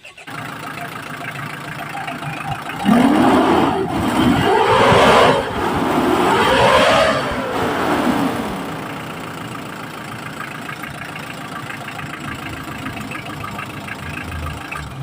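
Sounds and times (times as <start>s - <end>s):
diesel engine revving and idling: 0.0s - 15.0s.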